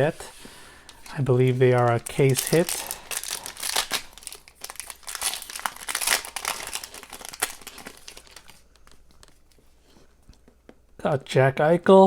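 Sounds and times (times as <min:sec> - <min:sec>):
card pack crinkling and rustling: 0:00.8 - 0:09.7.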